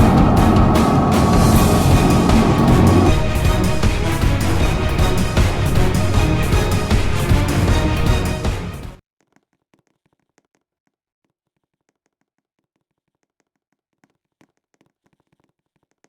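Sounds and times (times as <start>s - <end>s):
loud music track: 0.0s - 9.0s.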